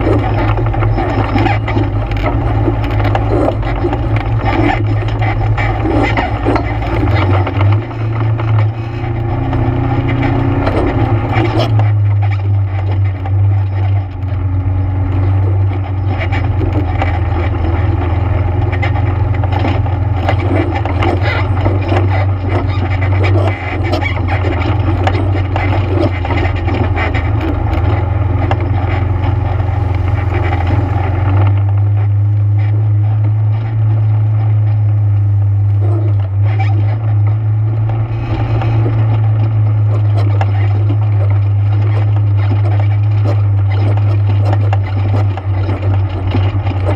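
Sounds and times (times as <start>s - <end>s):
rattling and knocking: 0.0s - 32.1s
atv engine running: 0.0s - 46.9s.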